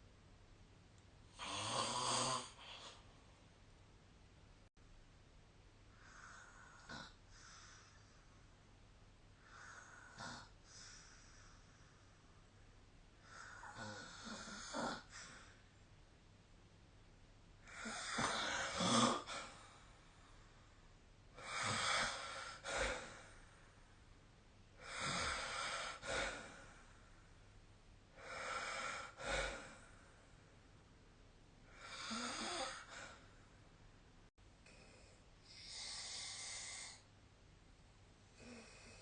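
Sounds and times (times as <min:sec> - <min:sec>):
person snoring: 0:01.3 - 0:03.0, 0:13.3 - 0:15.5, 0:17.7 - 0:19.7, 0:21.4 - 0:23.4, 0:24.8 - 0:26.8, 0:31.7 - 0:33.2, 0:34.7 - 0:37.1.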